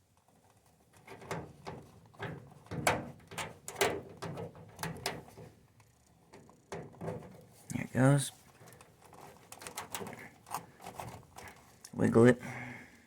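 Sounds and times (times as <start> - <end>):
metal knocks and clunks: 1.1 - 5.5.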